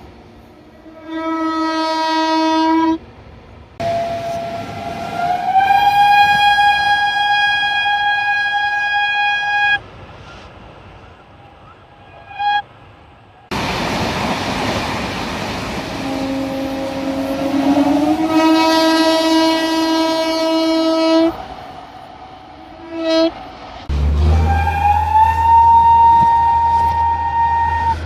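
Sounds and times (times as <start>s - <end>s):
locomotive horn blast: 0.8s - 3.0s, 3.8s - 9.8s, 16.0s - 21.4s, 22.6s - 28.0s.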